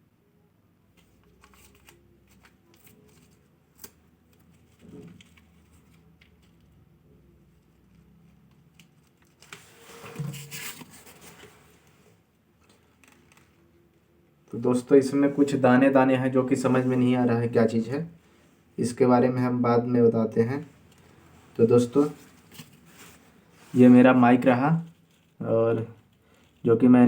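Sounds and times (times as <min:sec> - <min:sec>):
packaging rustling: 0:08.1 - 0:13.6, 0:20.8 - 0:23.9.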